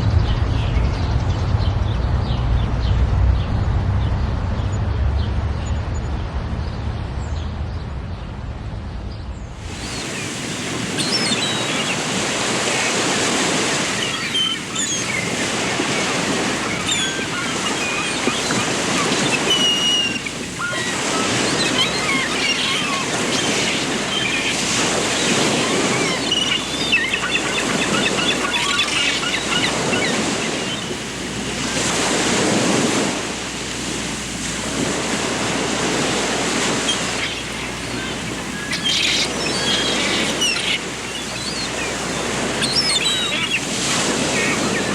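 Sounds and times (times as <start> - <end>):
rushing water: 9.6 - 44.9
small birds chirping: 9.7 - 31.0, 36.8 - 44.9.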